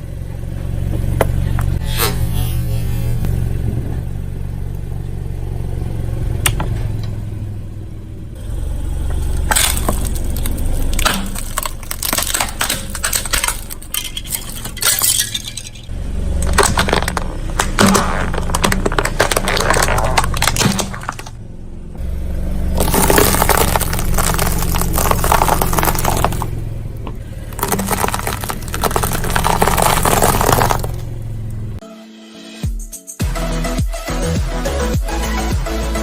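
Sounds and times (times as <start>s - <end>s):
low engine hum: 0.0s - 31.8s
tyre crushing brittle objects: 9.1s - 21.4s, 22.8s - 26.6s, 27.5s - 31.1s
sharp crack: 9.2s - 21.4s, 22.8s - 31.2s.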